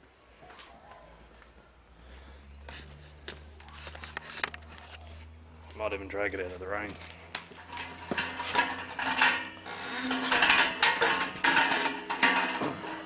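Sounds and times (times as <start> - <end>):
metal frame rattling on casters: 5.8 - 13.0.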